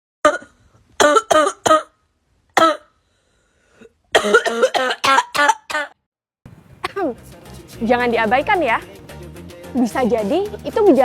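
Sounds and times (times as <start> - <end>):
person coughing: 2.6 - 2.9, 4.1 - 6.0.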